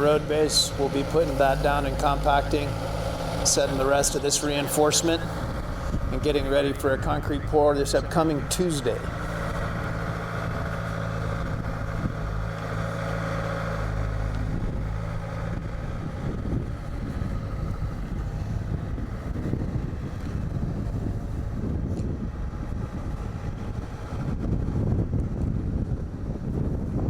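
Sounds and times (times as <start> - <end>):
construction machinery engine running: 0.0 - 27.0
wind buffeting microphone: 0.0 - 27.0.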